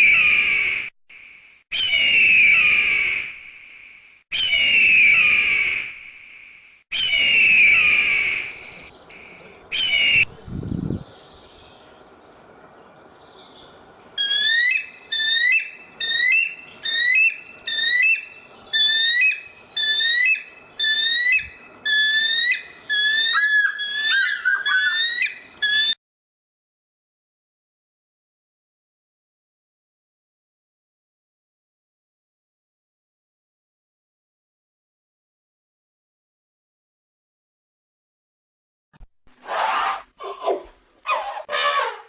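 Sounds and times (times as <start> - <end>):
shrill whistled animal calls: 1.7 - 3.4, 4.3 - 6.0, 6.9 - 8.6, 9.7 - 10.3, 14.2 - 26.0.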